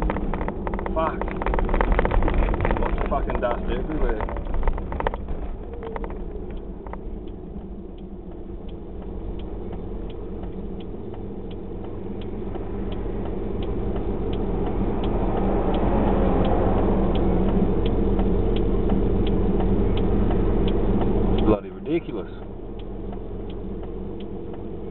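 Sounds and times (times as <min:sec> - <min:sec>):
car engine and road noise: 0:00.0 - 0:24.9
indicator relay ticking: 0:05.2 - 0:24.9.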